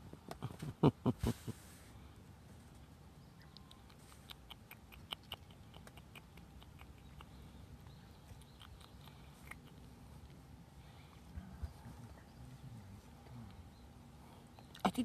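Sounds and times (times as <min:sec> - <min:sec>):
kittens chewing clicks: 0:03.5 - 0:10.5.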